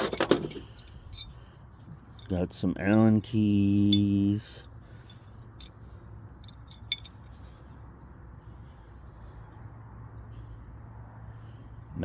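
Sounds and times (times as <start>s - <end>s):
steel hand tools clinking: 0.0s - 1.4s, 6.4s - 7.4s.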